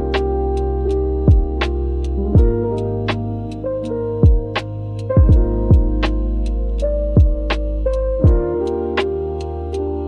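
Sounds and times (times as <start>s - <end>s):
instrumental chill music: 0.0s - 10.0s.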